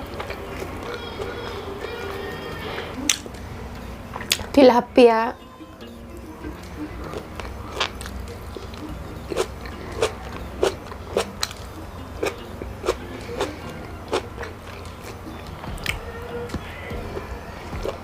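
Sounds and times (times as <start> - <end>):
chewing and crunching fish: 0.0 - 3.3
low steady hum: 0.0 - 18.0.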